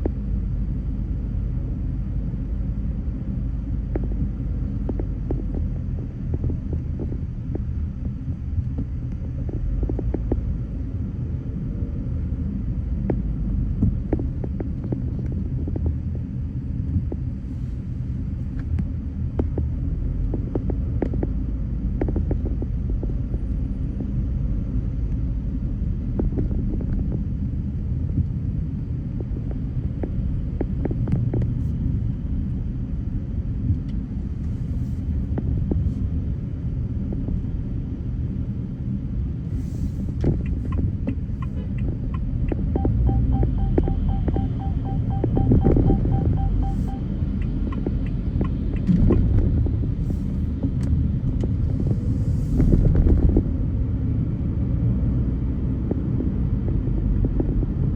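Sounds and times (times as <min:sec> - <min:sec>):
road and engine rumble: 0:00.0 - 0:57.9.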